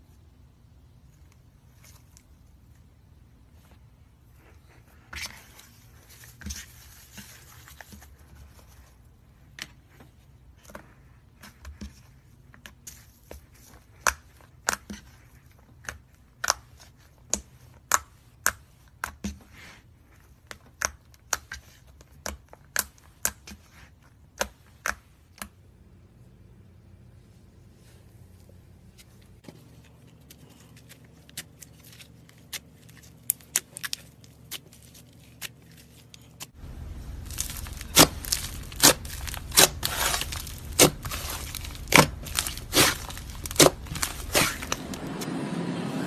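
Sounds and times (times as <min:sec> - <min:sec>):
slime crinkly stretching: 0:29.6 - 0:45.1.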